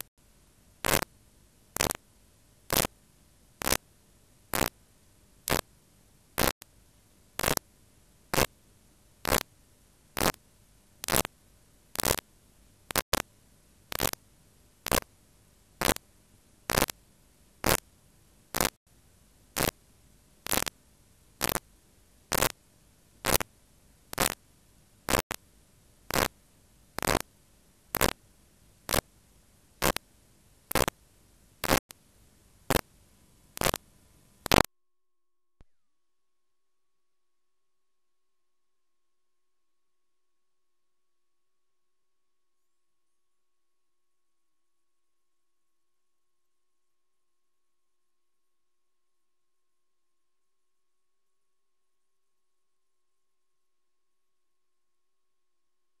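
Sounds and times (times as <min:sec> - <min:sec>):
faint steady hiss: 0:00.0 - 0:34.7.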